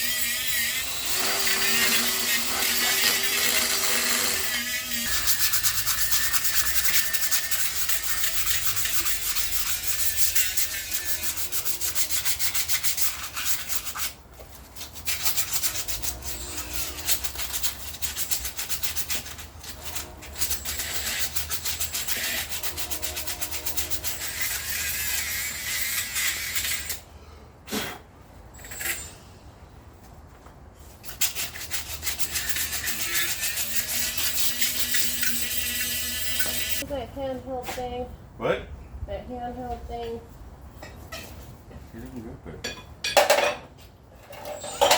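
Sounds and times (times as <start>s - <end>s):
sanding pad scraping rust: 0.0s - 27.0s, 31.0s - 36.8s.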